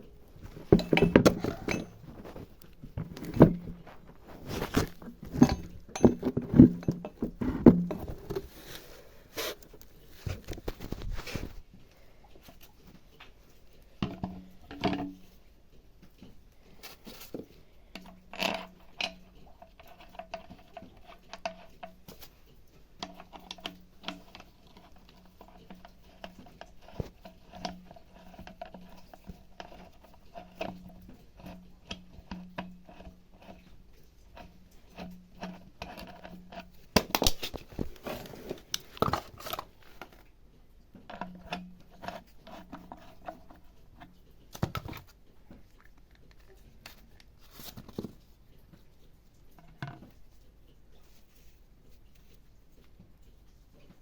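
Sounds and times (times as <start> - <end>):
hand tools and metal parts clinking: 0.4 - 8.8.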